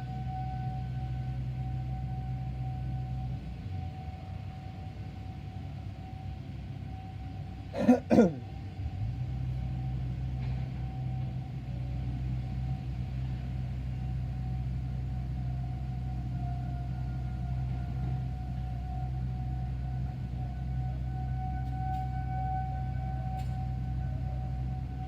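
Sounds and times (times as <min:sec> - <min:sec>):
distant warning sirens: 0:00.0 - 0:25.0
person coughing: 0:07.8 - 0:08.4.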